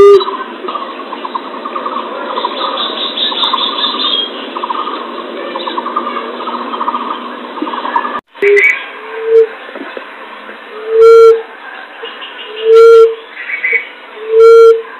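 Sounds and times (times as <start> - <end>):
birds chirping and trilling: 0.2 - 14.9.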